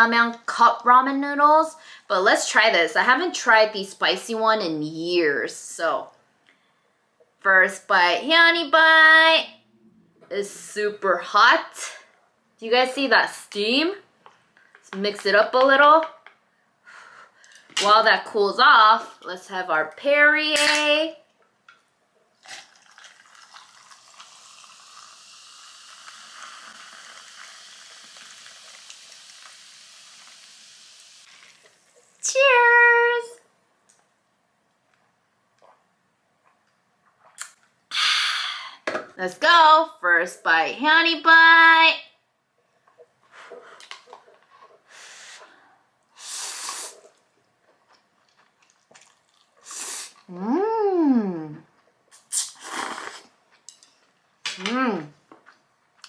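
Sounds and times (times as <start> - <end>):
slurping noodles: 22.4 - 30.4, 46.2 - 47.2, 48.6 - 50.3, 52.2 - 53.3
sparkling water fizzing: 22.6 - 32.4
woman humming mmm: 50.3 - 51.6.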